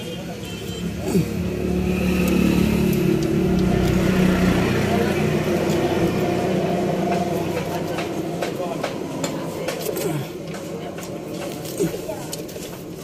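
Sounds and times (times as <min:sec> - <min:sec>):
vehicle engine running: 0:00.9 - 0:09.6.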